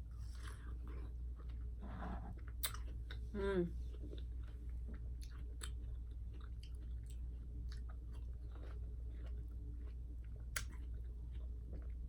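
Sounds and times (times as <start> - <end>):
steady low hum: 0.0 - 12.0
mouth clicks and smacks chewing: 2.6 - 3.2, 5.2 - 12.0.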